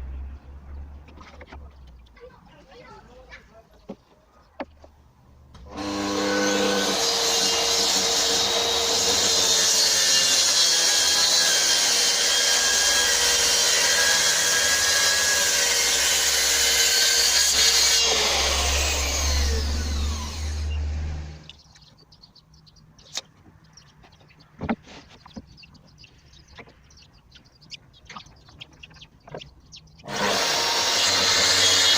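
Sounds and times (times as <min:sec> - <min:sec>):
track saw cutting plywood: 0:05.7 - 0:21.5, 0:30.0 - 0:31.9.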